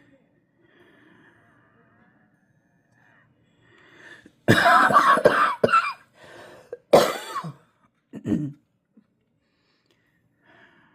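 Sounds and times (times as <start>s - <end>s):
person coughing: 4.5s - 6.1s, 6.7s - 8.6s
person breathing in: 6.1s - 6.8s.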